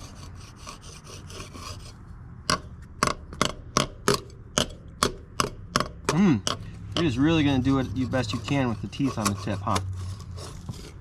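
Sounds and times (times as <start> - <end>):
hand saw rasping through wood: 0.0 - 3.2, 6.4 - 11.0
saw tip knocking wood: 2.5 - 9.9.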